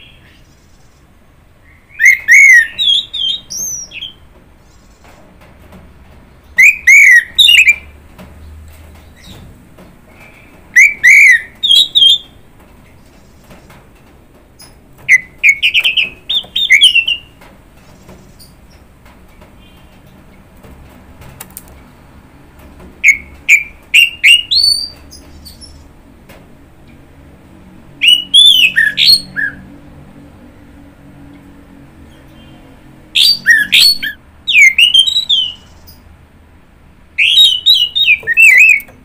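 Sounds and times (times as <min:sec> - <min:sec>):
thrush singing whistled notes: 0:01.6 - 0:04.2, 0:15.1 - 0:17.3, 0:28.0 - 0:29.6, 0:33.2 - 0:36.0, 0:37.2 - 0:38.9.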